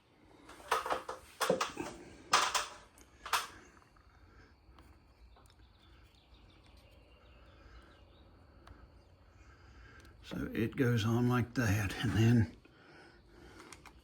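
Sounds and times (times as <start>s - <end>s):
small metal parts rattling: 0.5s - 3.6s.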